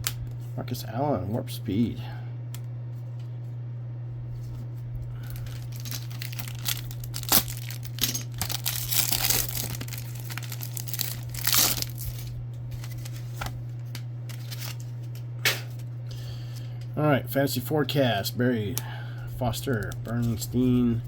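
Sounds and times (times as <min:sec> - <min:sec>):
steady low hum: 0:00.0 - 0:21.0
plastic wrapper crinkling and tearing: 0:05.2 - 0:14.8.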